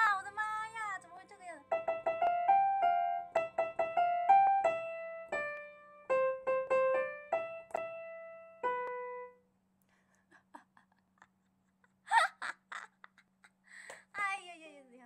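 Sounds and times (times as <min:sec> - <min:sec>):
piano melody: 0:00.0 - 0:09.5.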